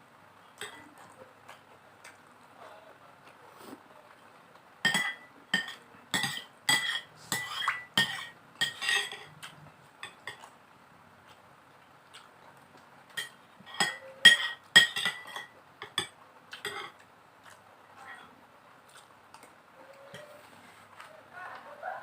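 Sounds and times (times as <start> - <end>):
metal spoon clinking on plate: 4.8 - 9.4, 13.2 - 17.0.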